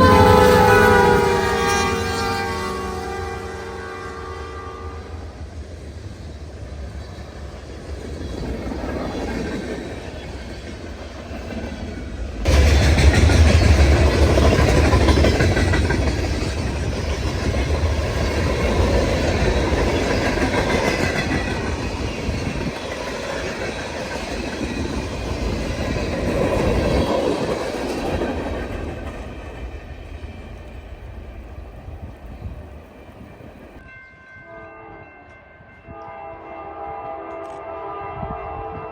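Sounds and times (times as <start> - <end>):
train horn: 0.0 - 5.4, 34.0 - 38.9
freight train wheels clattering: 5.5 - 33.8.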